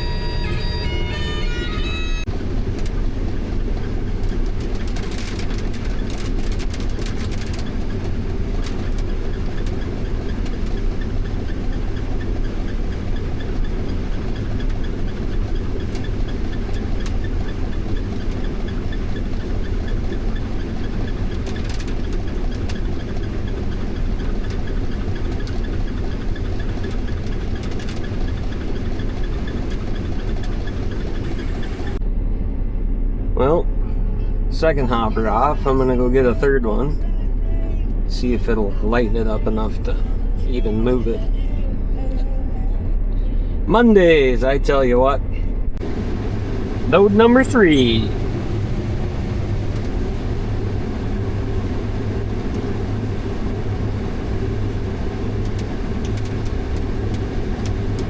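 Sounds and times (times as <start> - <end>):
diesel farm machinery running: 0.0 - 41.8, 45.2 - 58.0
short rattles or clicks: 2.3 - 32.0, 45.8 - 58.0.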